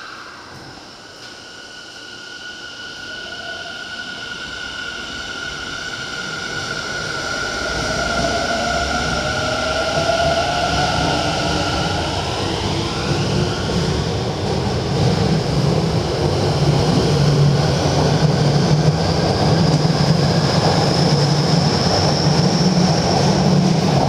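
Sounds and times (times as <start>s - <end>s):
train cars rumbling on rails: 6.2s - 24.0s.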